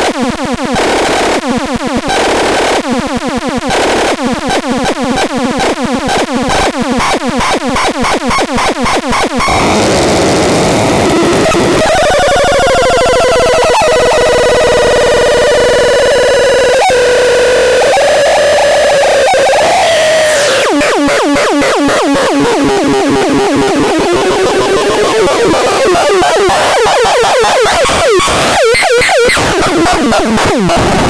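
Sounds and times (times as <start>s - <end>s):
electronic siren: 0.1s - 31.0s.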